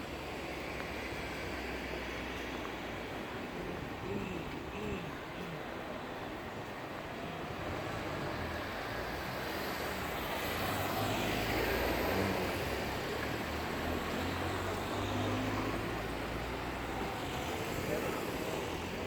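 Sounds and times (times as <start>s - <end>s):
passing vehicle engine rumble: 7.5s - 19.0s.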